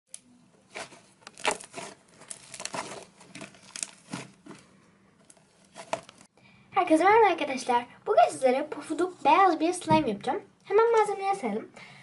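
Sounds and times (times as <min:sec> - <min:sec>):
crinkling handling noises: 0:00.6 - 0:06.3.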